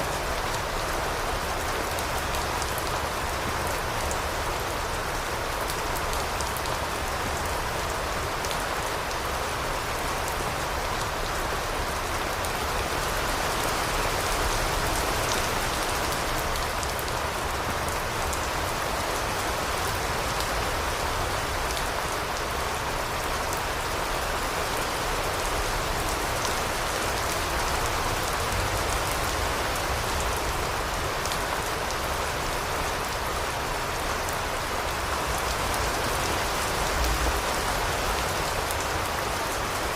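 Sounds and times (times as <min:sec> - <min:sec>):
rain spattering on a surface: 0:00.0 - 0:39.9.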